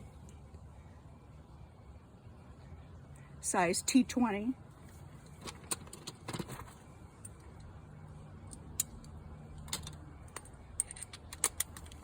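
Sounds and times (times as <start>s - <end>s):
faint low hum: 0.0s - 12.0s
hand tool clicks and clatters: 8.4s - 12.0s.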